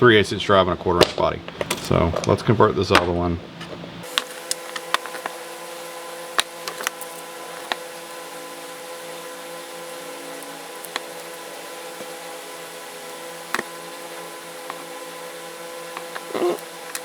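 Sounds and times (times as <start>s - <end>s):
steady background hum: 0.0s - 17.0s.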